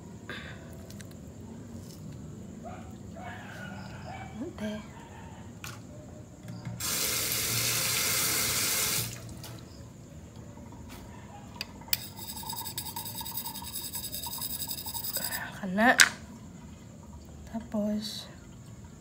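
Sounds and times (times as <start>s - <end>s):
water running from tap: 6.8s - 9.5s.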